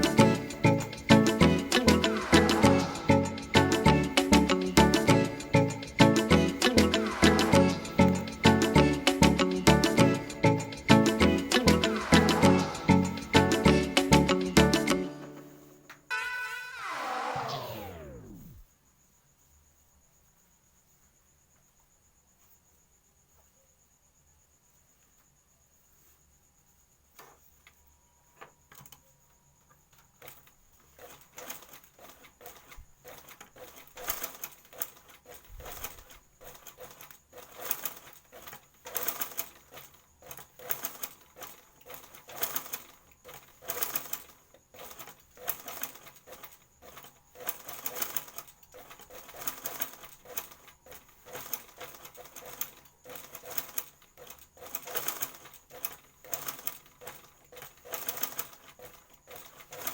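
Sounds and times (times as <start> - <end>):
sewing machine stitching: 0.0 - 15.2, 16.4 - 18.6, 30.0 - 59.9.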